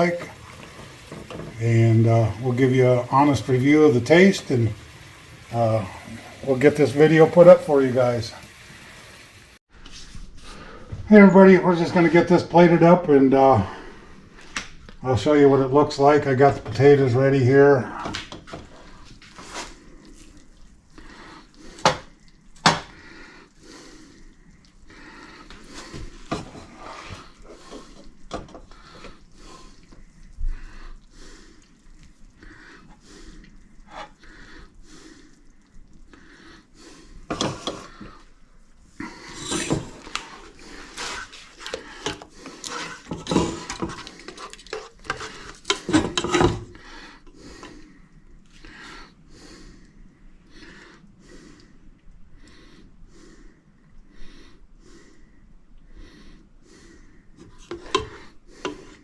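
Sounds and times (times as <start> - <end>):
utensils and dishes clinking: 42.8 - 46.7.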